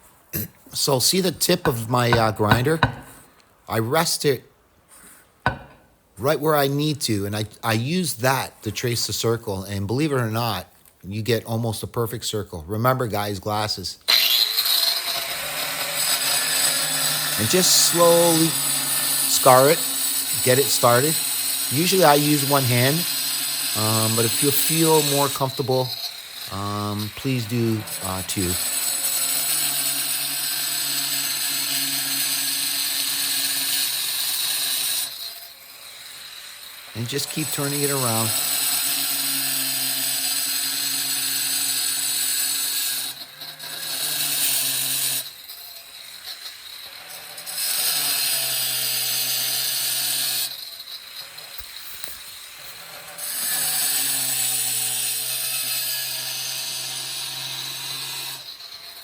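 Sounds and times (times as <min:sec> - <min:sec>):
angle grinder cutting tile: 0:01.5 - 0:03.3, 0:05.4 - 0:05.8, 0:14.1 - 0:59.0.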